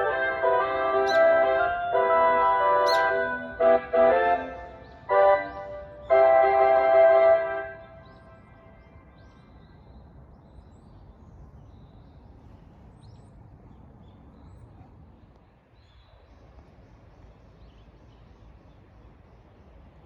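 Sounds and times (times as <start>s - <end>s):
small birds chirping: 1.0s - 1.5s, 2.6s - 3.6s, 4.4s - 6.4s.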